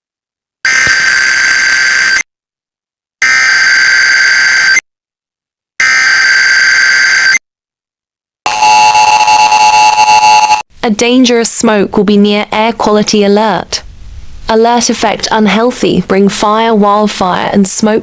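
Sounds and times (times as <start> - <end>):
two-tone attention signal: 8.5 - 10.6.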